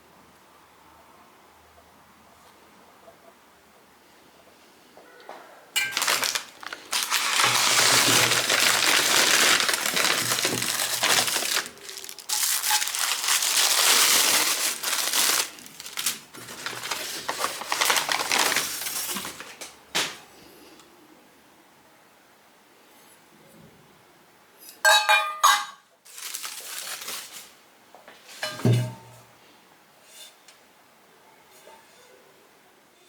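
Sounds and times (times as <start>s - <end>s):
crinkling and crumpling: 5.8s - 20.2s, 26.0s - 28.6s.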